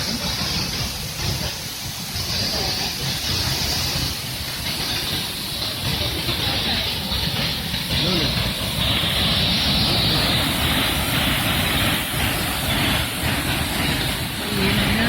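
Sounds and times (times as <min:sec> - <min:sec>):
waterfall rushing water: 0:00.0 - 0:15.0.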